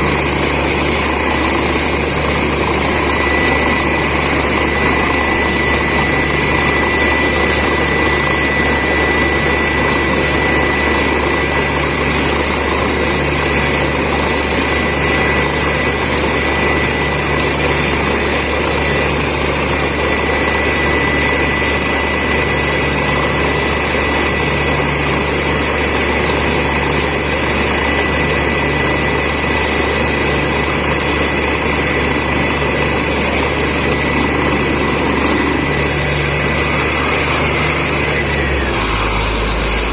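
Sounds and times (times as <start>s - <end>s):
low pulse: 0.0s - 26.3s
air compressor running: 0.0s - 39.9s
constant high whine: 0.0s - 39.9s
drilling rig running: 0.0s - 39.9s.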